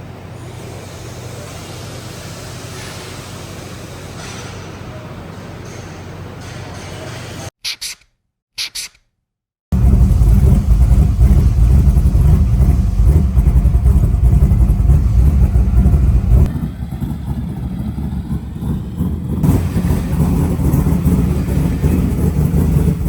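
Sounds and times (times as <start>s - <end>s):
vehicle engine rumbling: 9.7s - 23.0s.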